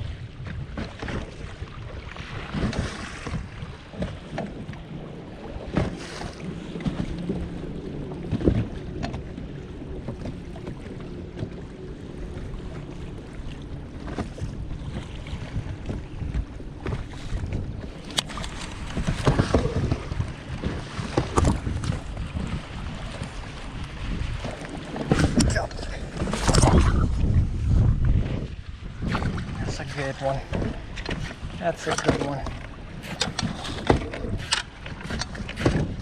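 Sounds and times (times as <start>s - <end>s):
water slapping boat hull: 0.0s - 36.0s
wind buffeting microphone: 0.0s - 36.0s
knocks on boat: 5.7s - 7.6s, 12.3s - 22.6s, 30.4s - 36.0s.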